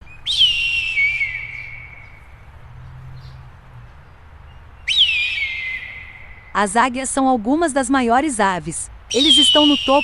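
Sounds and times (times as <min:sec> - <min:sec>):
eagle screaming: 0:00.3 - 0:02.2, 0:04.8 - 0:06.7, 0:09.1 - 0:10.0.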